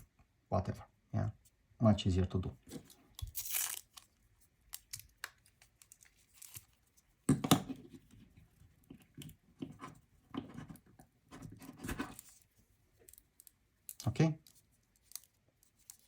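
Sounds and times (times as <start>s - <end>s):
velcro ripping: 3.3s - 4.1s.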